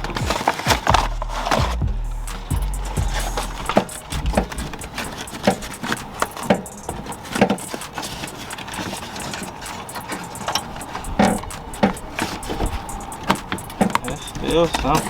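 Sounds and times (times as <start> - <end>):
car door panel clicking and rattling: 3.6 - 15.0.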